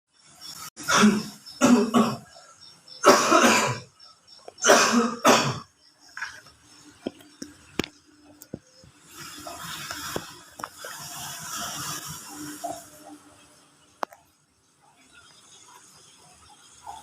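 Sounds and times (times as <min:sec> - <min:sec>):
person coughing loudly: 0:00.8 - 0:02.3, 0:03.0 - 0:03.9, 0:04.6 - 0:05.7.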